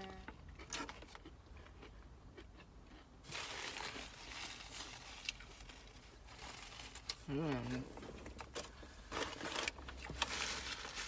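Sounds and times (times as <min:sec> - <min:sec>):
paper wrapper rustling: 0:09.1 - 0:11.0.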